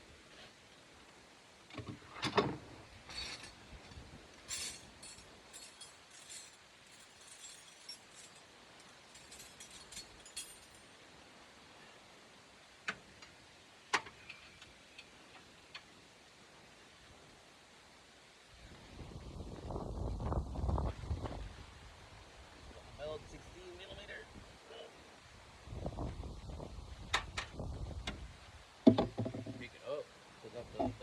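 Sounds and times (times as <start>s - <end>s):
light metallic clinks: 3.1s - 10.9s.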